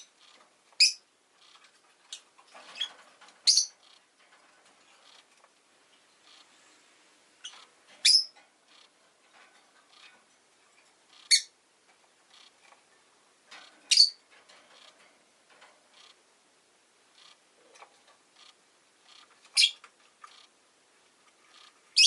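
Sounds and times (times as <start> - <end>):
faint bird chirps: 0.0 - 4.0, 7.4 - 9.0, 11.1 - 11.6, 13.6 - 15.0, 17.1 - 20.5
lovebird sharp calls: 0.0 - 4.0, 7.4 - 8.9, 11.1 - 11.6, 13.9 - 14.2, 18.4 - 20.5.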